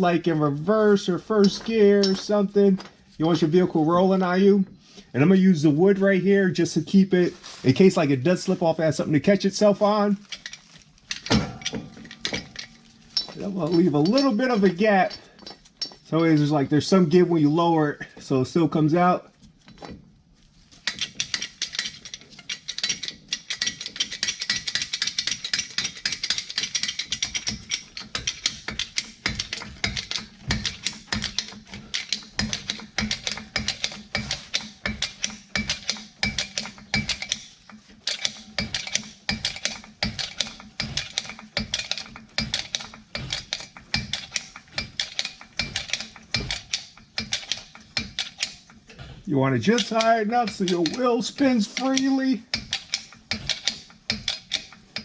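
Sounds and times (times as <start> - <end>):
vehicle jack clicking: 20.9 - 49.0, 49.6 - 55.0.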